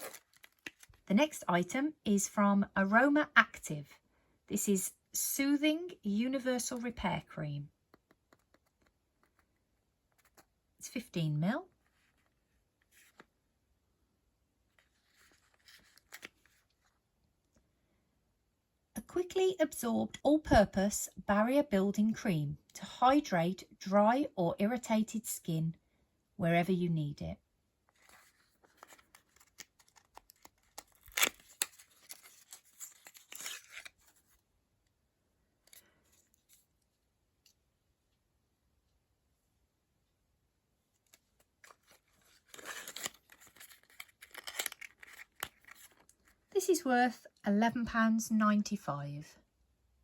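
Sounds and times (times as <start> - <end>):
packaging rustling: 0.0 - 1.0, 28.0 - 34.4, 41.1 - 46.4
packaging handling click: 42.5 - 46.0.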